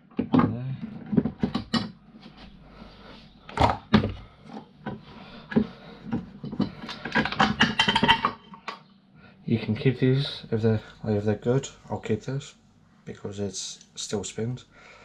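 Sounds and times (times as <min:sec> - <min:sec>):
scooter parts clicking and knocking: 0:00.1 - 0:02.0, 0:04.8 - 0:08.8.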